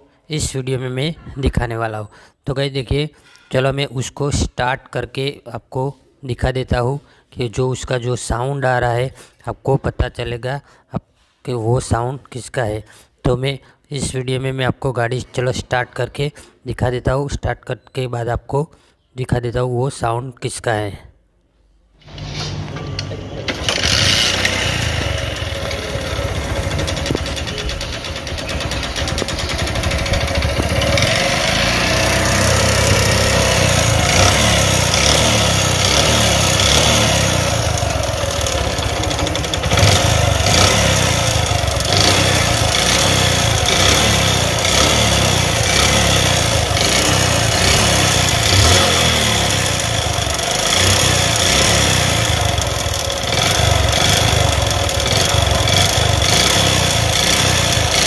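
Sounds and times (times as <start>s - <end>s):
motorcycle engine idling: 23.1s - 58.0s
engine ticking noise: 23.6s - 58.0s.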